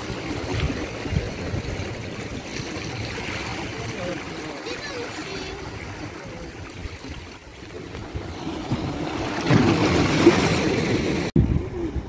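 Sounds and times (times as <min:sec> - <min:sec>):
wind rumbling on microphone: 0:00.0 - 0:03.6, 0:06.5 - 0:12.0
sea waves washing in: 0:00.0 - 0:12.0.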